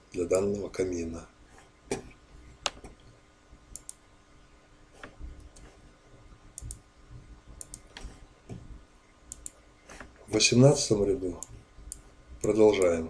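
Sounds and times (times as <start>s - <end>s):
faint steady hum: 0.0s - 13.0s
computer mouse clicking: 3.7s - 4.0s, 5.0s - 5.8s, 6.6s - 6.8s, 7.6s - 8.6s, 9.3s - 10.1s, 11.4s - 13.0s.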